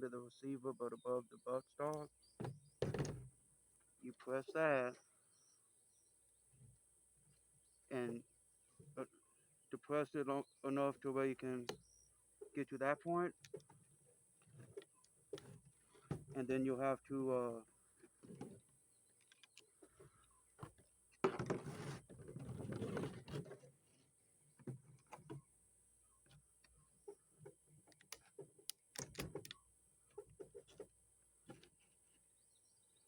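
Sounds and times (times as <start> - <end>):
metallic clicks and knocks: 27.9 - 29.6.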